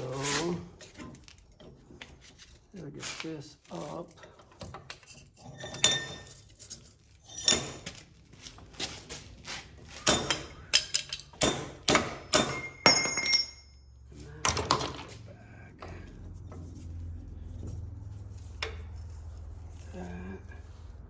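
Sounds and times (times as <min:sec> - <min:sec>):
sharp metallic knocks and clinks: 0:04.6 - 0:08.0, 0:10.0 - 0:15.2.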